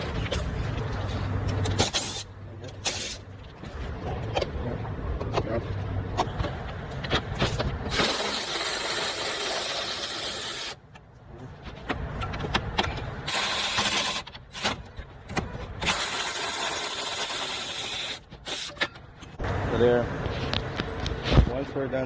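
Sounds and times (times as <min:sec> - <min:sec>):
power tool whirring: 0:07.9 - 0:10.8.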